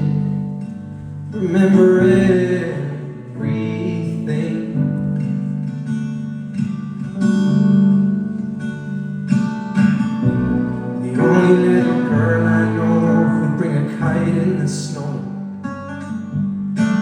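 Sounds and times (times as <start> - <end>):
acoustic guitar strumming: 0.0 - 17.0
man singing: 1.3 - 5.0, 11.0 - 15.4.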